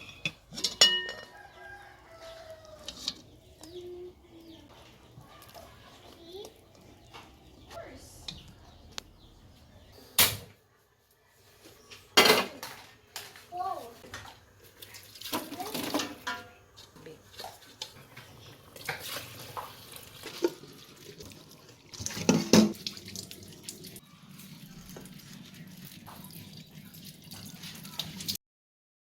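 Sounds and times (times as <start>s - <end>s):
pots and utensils clattering: 0.0s - 3.8s, 12.1s - 13.4s, 14.0s - 23.2s
tap water running into sink: 18.8s - 28.4s.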